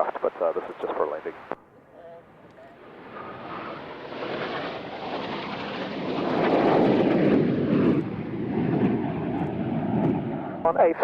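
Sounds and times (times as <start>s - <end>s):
aircraft engine flying past: 2.2s - 11.0s.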